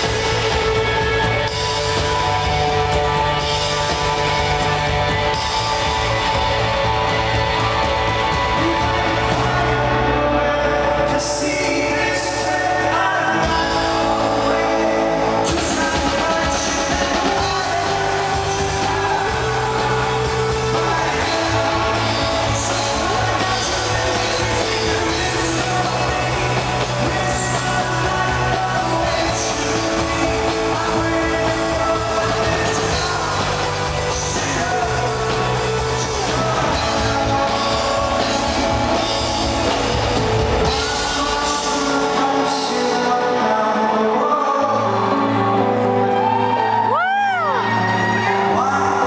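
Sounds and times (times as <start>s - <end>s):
lead singer: 0.0s - 49.0s
rock band playing live: 0.0s - 49.0s.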